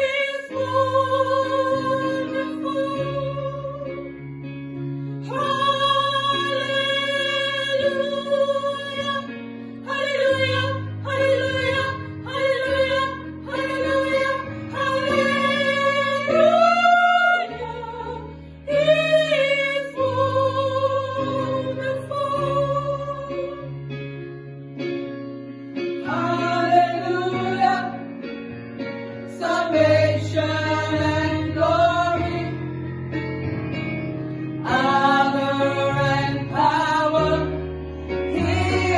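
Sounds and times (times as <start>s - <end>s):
woman singing gospel: 0.0s - 4.0s, 5.2s - 9.3s, 9.9s - 23.6s, 26.1s - 28.0s, 34.6s - 37.6s, 38.3s - 38.9s
guitar and bass accompaniment: 0.0s - 38.9s.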